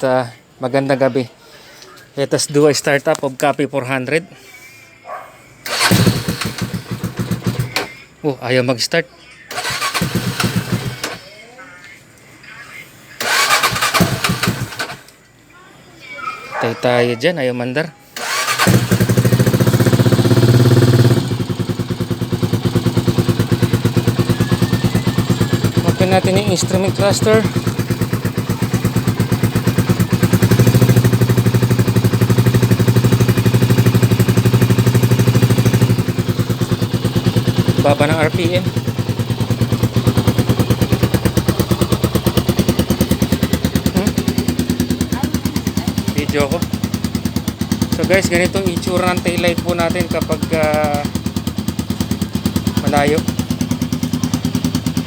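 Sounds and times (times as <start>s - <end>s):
motorcycle engine idling: 5.6s - 8.2s, 9.5s - 11.4s, 13.2s - 15.0s, 18.2s - 55.0s.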